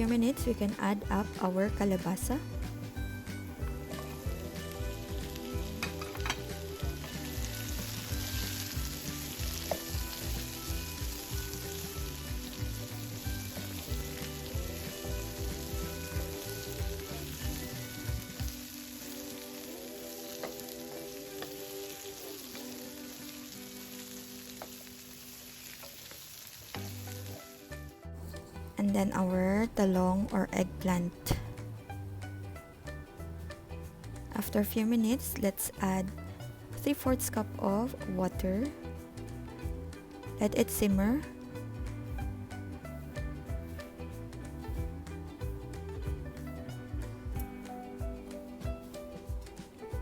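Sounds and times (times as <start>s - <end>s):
background music with a beat: 0.0s - 23.4s, 31.2s - 34.4s, 38.0s - 50.0s
food sizzling in a pan: 2.4s - 27.9s.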